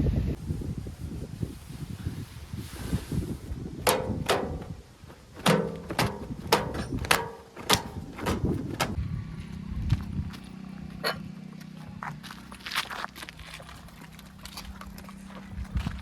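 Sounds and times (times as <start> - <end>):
sharp metallic clanks: 3.8 - 9.0.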